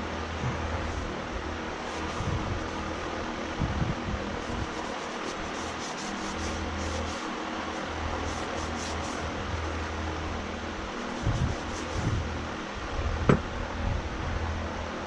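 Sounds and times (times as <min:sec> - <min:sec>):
fan whir and hiss: 0:00.0 - 0:15.0
low hum: 0:00.0 - 0:15.0.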